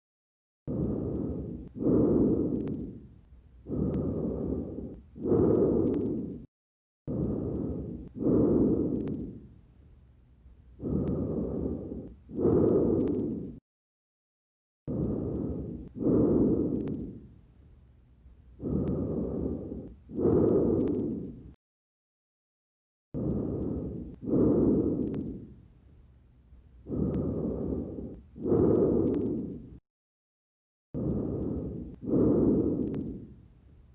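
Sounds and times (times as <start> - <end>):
breathing through a stethoscope: 0.7 - 6.5, 7.1 - 9.6, 10.7 - 13.6, 14.9 - 17.4, 18.5 - 21.6, 23.1 - 25.7, 26.8 - 29.8, 31.0 - 33.6.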